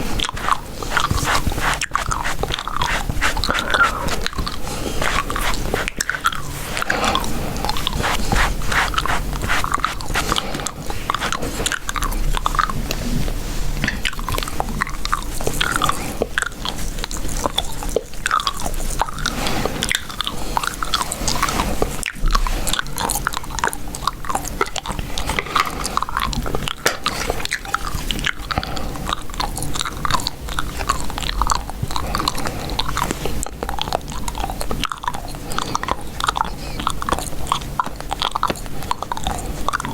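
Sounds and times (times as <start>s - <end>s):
gum chewing: 0.0s - 12.8s, 22.1s - 39.9s.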